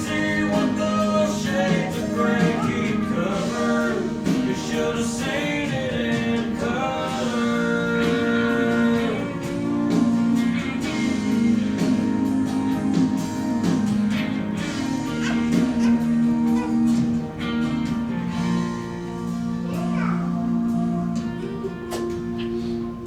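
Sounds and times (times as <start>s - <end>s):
person singing: 0.0s - 17.4s
strummed acoustic guitar: 0.0s - 22.8s.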